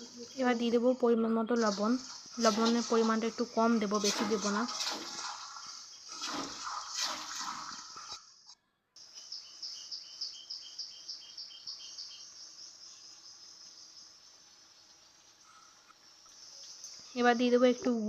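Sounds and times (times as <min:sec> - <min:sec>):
food sizzling in oil: 0:01.6 - 0:04.9
high chirping: 0:09.0 - 0:14.2.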